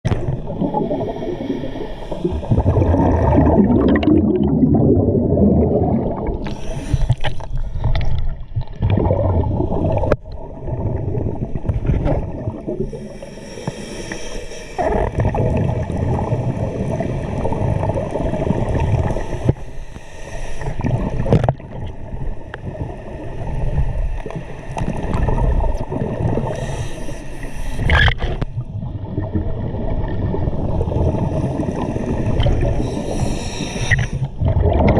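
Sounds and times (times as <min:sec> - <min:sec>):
gurgling exhaust bubbles underwater: 0:00.0 - 0:13.8, 0:14.8 - 0:19.9, 0:20.6 - 0:34.9
hissing regulator inhalation: 0:06.4 - 0:07.5, 0:12.8 - 0:15.1, 0:19.0 - 0:20.8, 0:26.4 - 0:28.4, 0:31.3 - 0:34.3.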